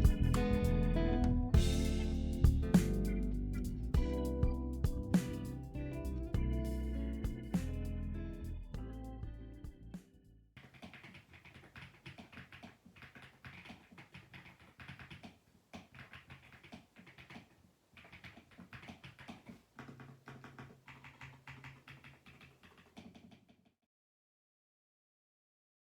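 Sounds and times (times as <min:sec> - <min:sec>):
mechanical keyboard typing: 0:10.6 - 0:23.3.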